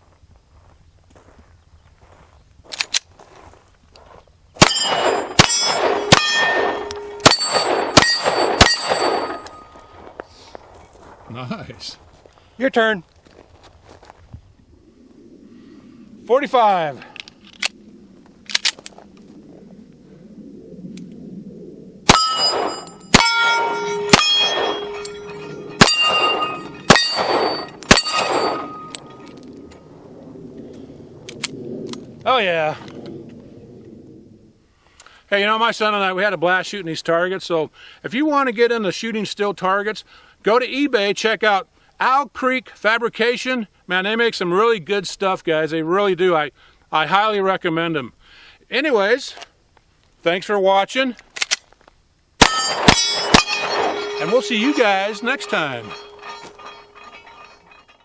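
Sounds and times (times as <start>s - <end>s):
gunshots: 4.6s - 9.5s, 22.1s - 29.2s, 52.4s - 57.1s
pistol shots: 4.6s - 9.6s, 22.1s - 29.1s, 52.4s - 56.8s
steel target plate clanging: 4.6s - 9.8s, 22.1s - 29.4s, 52.4s - 58.0s.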